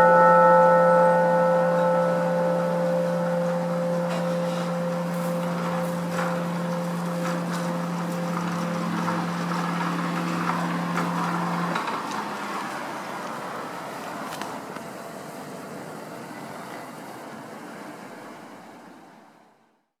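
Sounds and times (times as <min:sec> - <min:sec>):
steady loudspeaker hum: 0:00.0 - 0:11.7
loudspeaker chime tones: 0:00.0 - 0:11.8
outdoor background noise: 0:00.0 - 0:20.0.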